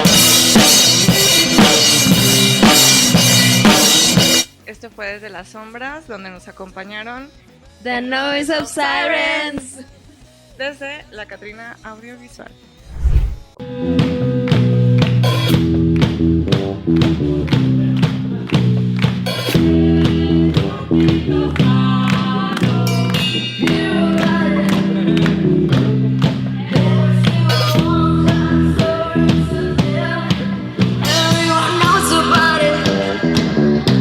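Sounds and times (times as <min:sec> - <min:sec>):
drums keeping steady beat: 0:00.0 - 0:04.5.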